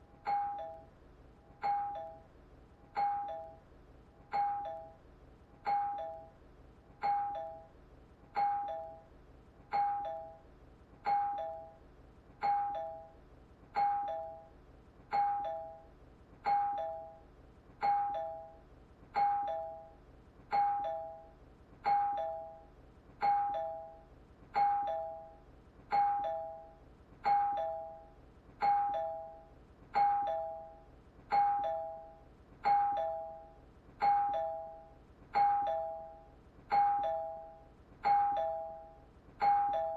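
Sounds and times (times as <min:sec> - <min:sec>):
two-tone doorbell chime: 0:00.2 - 0:01.0, 0:01.6 - 0:02.3, 0:02.9 - 0:03.7, 0:04.3 - 0:05.0, 0:05.6 - 0:06.4, 0:07.0 - 0:09.1, 0:09.7 - 0:11.8, 0:12.4 - 0:39.9.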